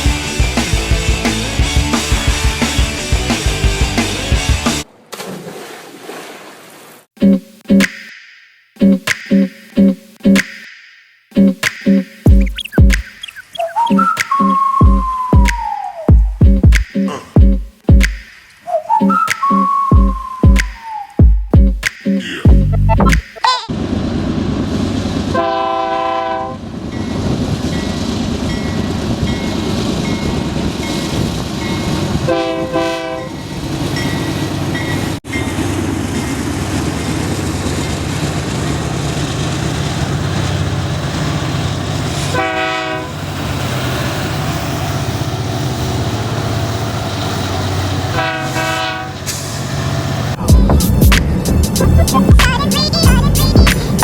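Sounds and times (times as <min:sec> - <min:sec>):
train rumble and rail noise: 0:00.0 - 0:04.9, 0:23.7 - 0:54.0
train horn blasts: 0:25.3 - 0:26.6, 0:32.3 - 0:33.4, 0:42.3 - 0:43.2, 0:48.1 - 0:49.3.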